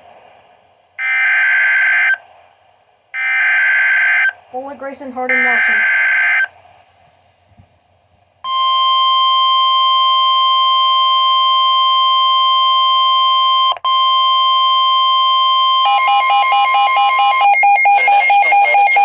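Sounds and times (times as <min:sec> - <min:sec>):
fast-pulsing alarm tone: 0:14.6 - 0:19.0.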